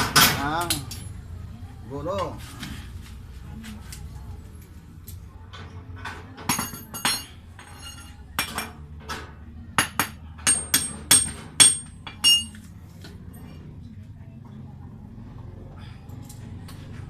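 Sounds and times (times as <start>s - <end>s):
metal tools clinking on metal: 0.1s - 1.2s, 6.5s - 8.7s, 10.5s - 12.7s.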